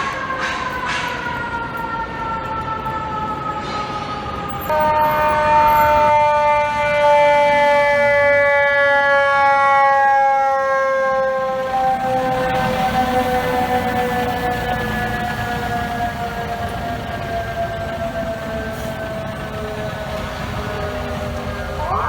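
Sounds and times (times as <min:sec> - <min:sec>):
lower siren wail: 0:00.0 - 0:22.0
mechanical siren winding down: 0:21.3 - 0:22.0.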